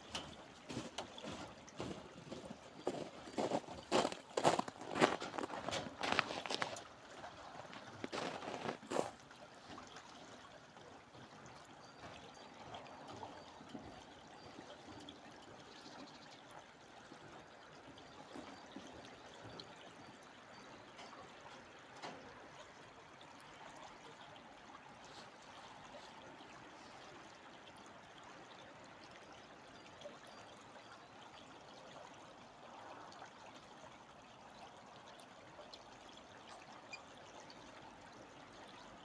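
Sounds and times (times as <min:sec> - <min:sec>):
stream water running: 0:00.0 - 0:39.0
footsteps: 0:00.2 - 0:06.8, 0:07.6 - 0:09.1.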